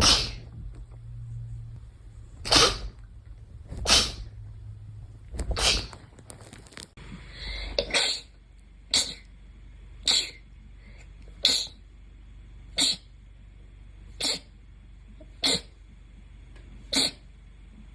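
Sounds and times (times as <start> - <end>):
person sneezing: 0.0 - 0.4, 2.4 - 3.0, 3.9 - 4.2, 5.6 - 5.9, 7.8 - 8.3, 8.9 - 9.3, 10.0 - 10.4, 11.4 - 11.8, 12.8 - 13.1, 14.2 - 14.5, 15.2 - 15.7, 16.8 - 17.3.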